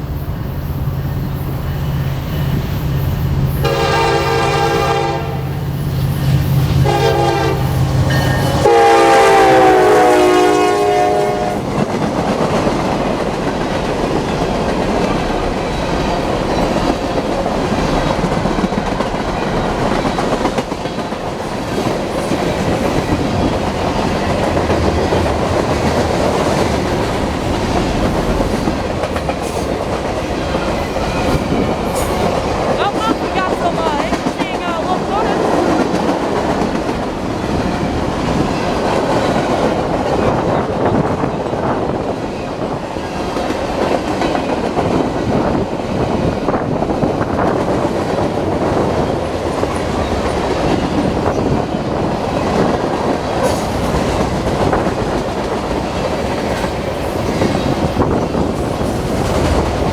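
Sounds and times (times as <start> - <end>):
train horn blasts: 3.6 - 5.7, 6.8 - 11.7.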